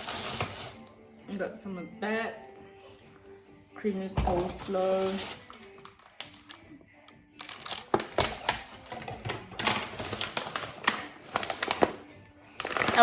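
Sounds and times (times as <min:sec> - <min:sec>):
plastic packaging crinkling: 0:04.4 - 0:06.6, 0:07.4 - 0:13.0.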